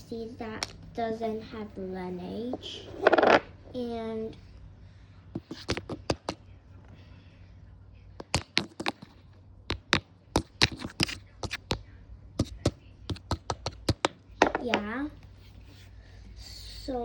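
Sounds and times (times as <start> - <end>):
taps and clicks of hard items: 5.4 - 6.4, 8.2 - 11.8, 12.4 - 14.9.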